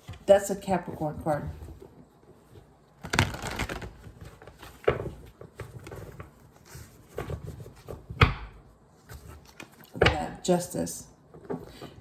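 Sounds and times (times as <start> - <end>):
cards rustling: 3.0 - 7.6.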